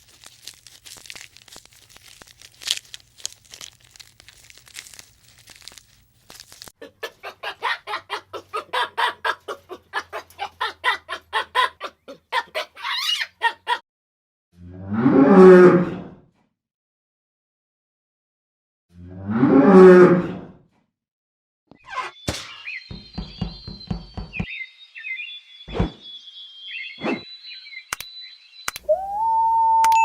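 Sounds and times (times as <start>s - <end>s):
chicken clucking: 6.8s - 12.7s
chicken squawk: 6.8s - 13.8s.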